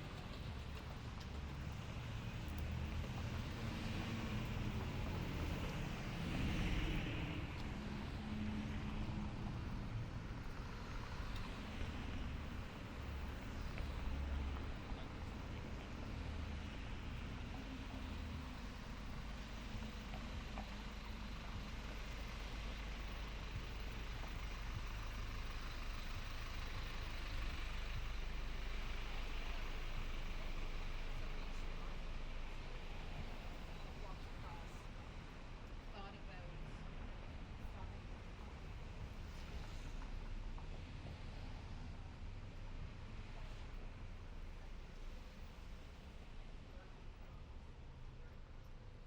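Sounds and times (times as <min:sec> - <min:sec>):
road noise: 0:00.0 - 0:49.0
traffic rumble: 0:00.0 - 0:49.0
vehicle engine running: 0:00.0 - 0:49.0.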